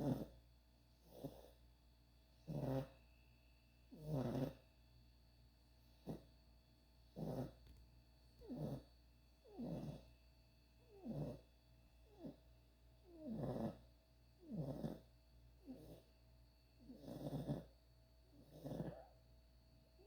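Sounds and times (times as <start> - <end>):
puppy snoring: 0.0 - 1.7, 2.4 - 3.1, 3.8 - 4.8, 5.9 - 6.4, 7.1 - 7.8, 8.4 - 16.2, 16.8 - 19.2.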